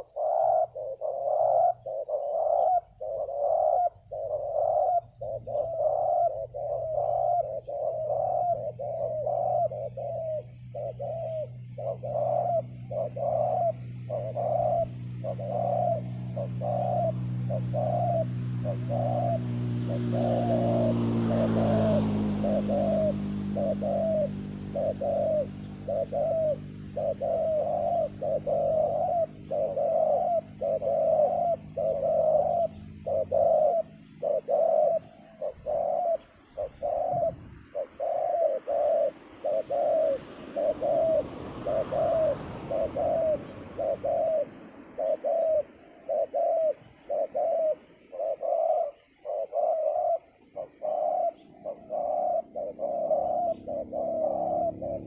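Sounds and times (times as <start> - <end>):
doves cooing: 0.0 - 55.0.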